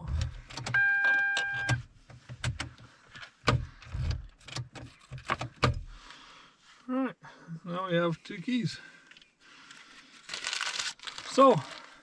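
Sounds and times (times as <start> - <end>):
keys clicking in ignition switch: 0.0 - 5.9.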